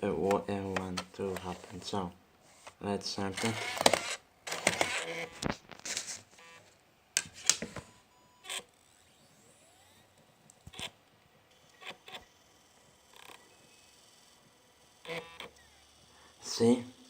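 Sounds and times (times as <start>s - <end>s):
optical drive clicks and whirs: 3.4s - 6.6s, 7.2s - 16.1s.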